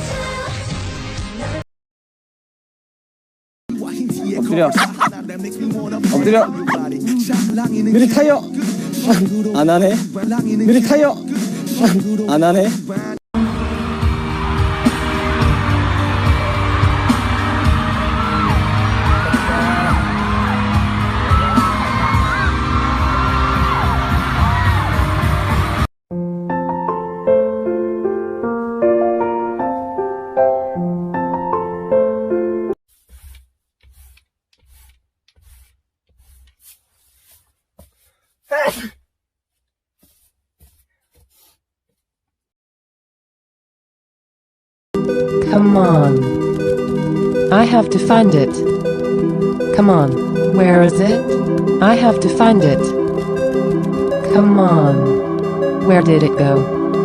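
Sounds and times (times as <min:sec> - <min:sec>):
pop background music: 0:03.7 - 0:25.8, 0:45.0 - 0:57.0
person sneezing loudly: 0:04.7 - 0:05.1, 0:38.5 - 0:39.0.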